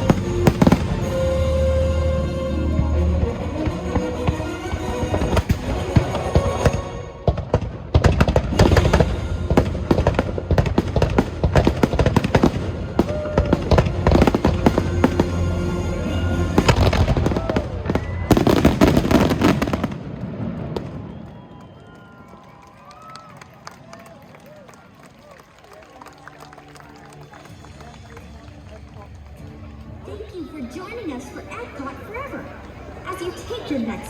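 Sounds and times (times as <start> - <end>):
music: 0.0 - 19.6, 25.9 - 34.0
firework bangs and crackles: 0.0 - 24.5.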